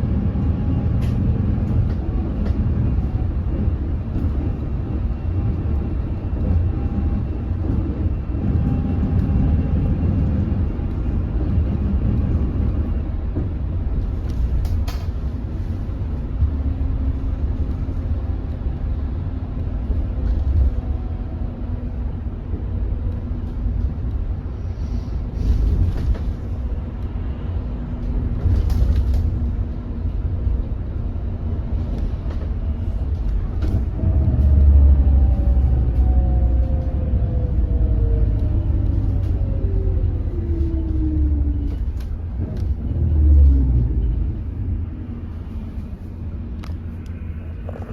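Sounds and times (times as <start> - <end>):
road rumble: 0.0 - 47.9.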